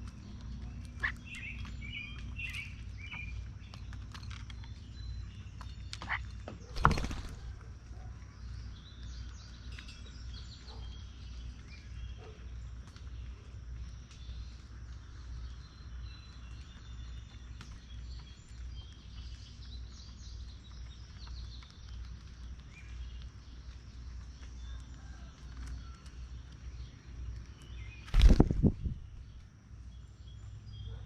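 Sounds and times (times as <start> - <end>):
songbirds chirping: 0.0 - 31.0
steady low rumble: 26.8 - 30.8.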